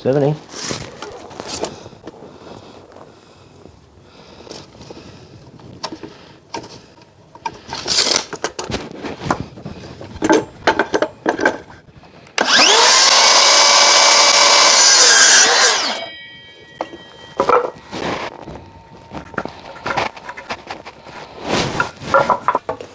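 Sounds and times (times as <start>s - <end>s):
electric saw cutting timber: 12.4s - 16.1s.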